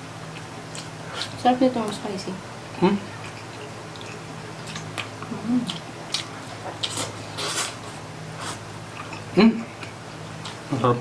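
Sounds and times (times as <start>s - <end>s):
steady low hum: 0.0s - 11.0s
person chewing: 0.3s - 1.4s, 2.9s - 10.6s
person humming mm: 5.3s - 5.8s.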